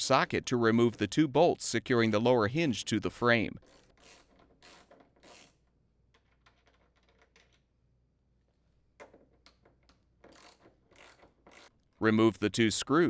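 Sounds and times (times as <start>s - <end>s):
ratchet clicking: 3.6s - 7.6s, 9.5s - 11.7s.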